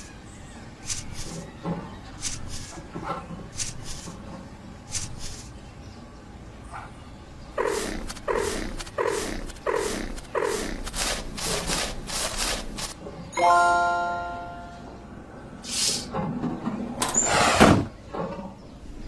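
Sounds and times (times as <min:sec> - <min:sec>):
short hissing noises: 0:07.6 - 0:13.0, 0:15.6 - 0:16.1.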